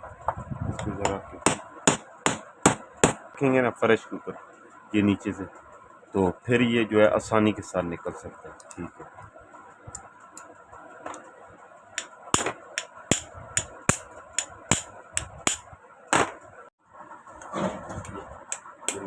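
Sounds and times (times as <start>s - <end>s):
sharp metal taps: 12.0s - 15.6s.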